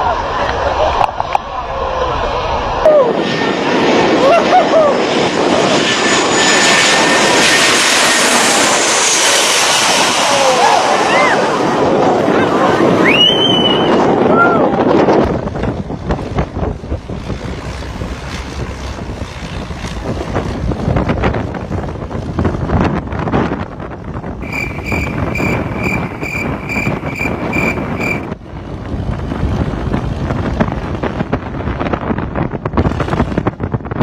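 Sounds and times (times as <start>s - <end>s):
steady rushing noise: 0.0s - 34.0s
wind buffeting microphone: 0.0s - 34.0s
electronic warning beep: 24.5s - 28.2s.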